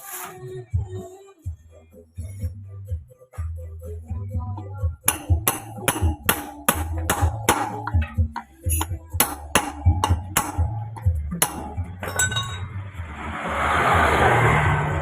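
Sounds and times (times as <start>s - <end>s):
music: 0.0s - 15.0s
sharp clinking metal strikes: 5.1s - 12.8s.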